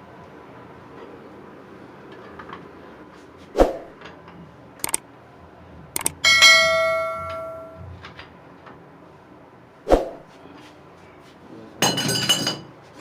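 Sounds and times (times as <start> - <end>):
metal tool clanking and ringing: 6.2 - 7.8.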